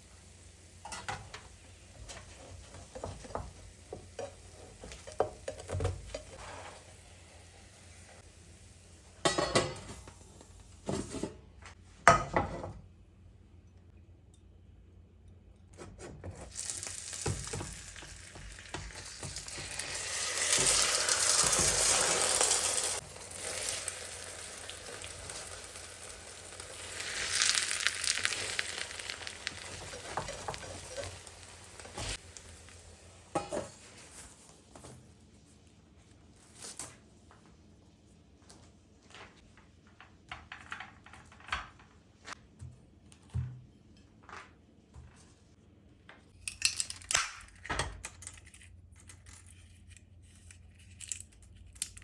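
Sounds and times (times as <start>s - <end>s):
food sizzling in a pan: 0.0s - 5.5s, 16.5s - 33.8s.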